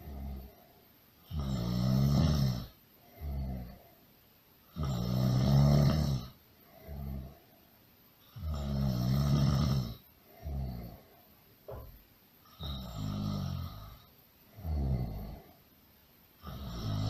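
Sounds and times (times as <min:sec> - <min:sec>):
loud rattling snoring: 0:01.3 - 0:03.8, 0:04.7 - 0:07.4, 0:08.3 - 0:11.1, 0:12.6 - 0:15.6, 0:16.4 - 0:17.0.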